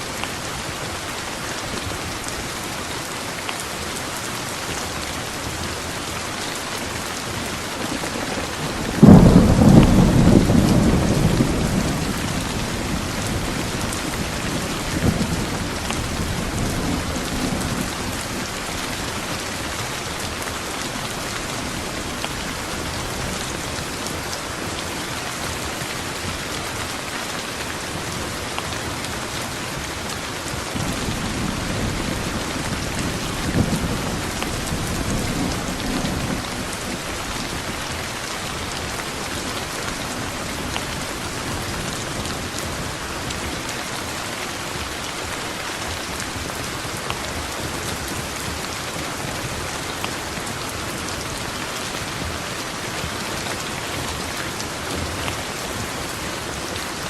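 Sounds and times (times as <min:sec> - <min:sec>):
heavy rain: 0:00.0 - 0:57.0
thunderclap rumbling: 0:07.4 - 0:20.3, 0:30.6 - 0:43.6.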